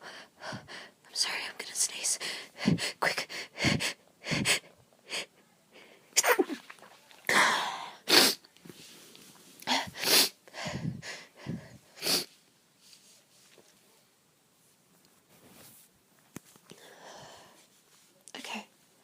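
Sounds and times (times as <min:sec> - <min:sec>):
person sneezing: 0:06.2 - 0:08.4.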